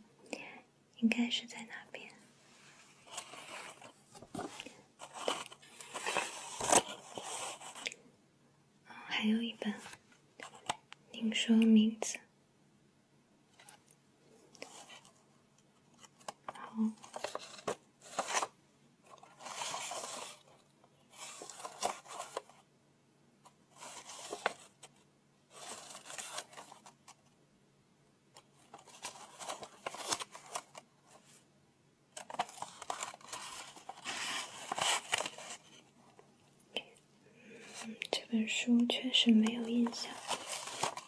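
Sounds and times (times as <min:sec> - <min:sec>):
paper rustling: 0:02.5 - 0:07.9, 0:16.0 - 0:22.6, 0:23.7 - 0:27.2, 0:28.4 - 0:31.4, 0:32.2 - 0:36.3, 0:39.2 - 0:41.0.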